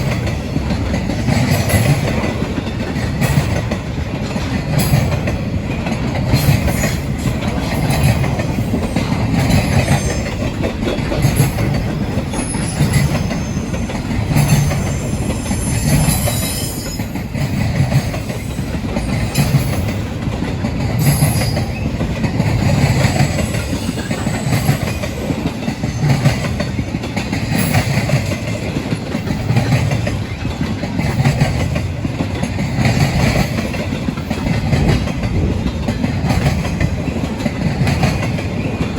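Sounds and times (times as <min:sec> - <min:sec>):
train wheels clacking over rail joints: 0:00.0 - 0:38.9
high wheel squeal: 0:08.7 - 0:10.6, 0:11.3 - 0:17.6, 0:21.0 - 0:22.0.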